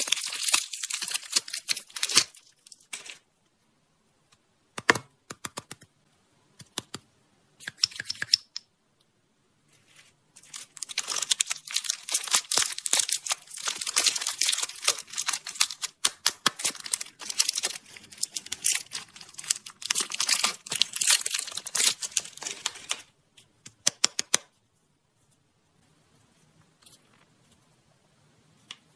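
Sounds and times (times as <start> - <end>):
candy wrapper crinkling: 0.0 - 3.3, 10.4 - 23.1.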